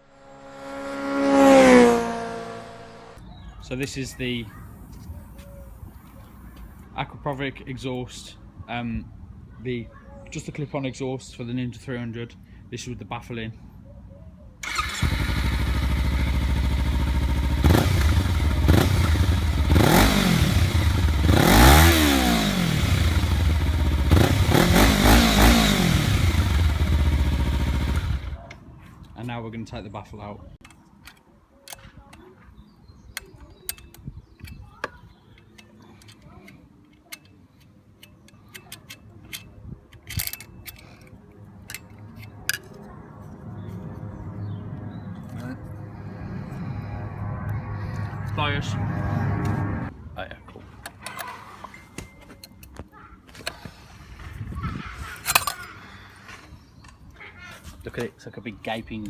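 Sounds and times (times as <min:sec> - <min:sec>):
motorcycle engine revving: 0:00.0 - 0:03.2, 0:14.6 - 0:28.4.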